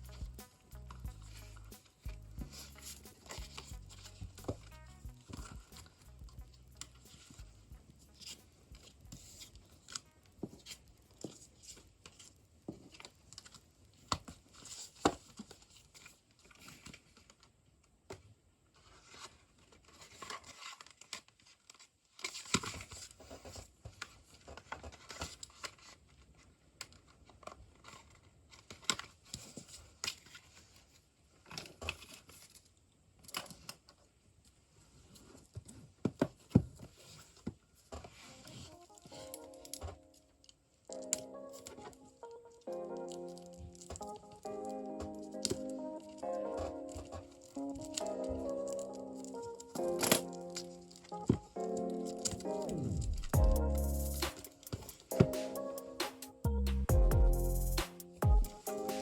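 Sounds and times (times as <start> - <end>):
paper and plastic tearing and crinkling: 18.8 - 33.9, 35.1 - 40.1, 43.0 - 53.4.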